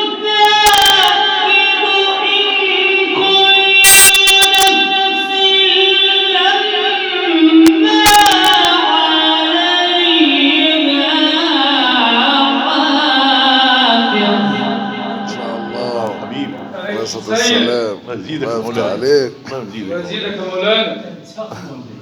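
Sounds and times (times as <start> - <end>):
man reciting melodically: 15.2 - 20.8.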